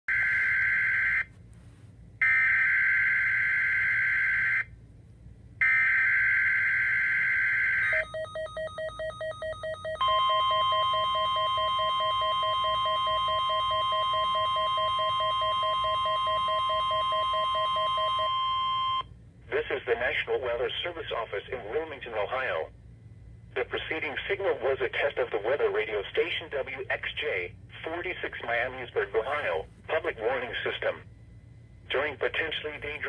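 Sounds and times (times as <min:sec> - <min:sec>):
steady warning alarm tone: 0:00.1 - 0:01.4, 0:02.2 - 0:04.7, 0:05.6 - 0:19.1.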